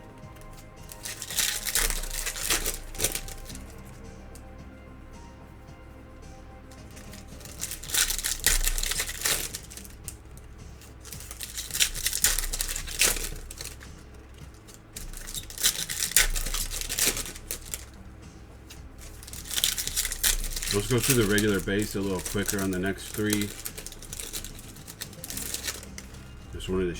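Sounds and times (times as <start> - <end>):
foil wrappers crinkling: 0.0 - 26.9.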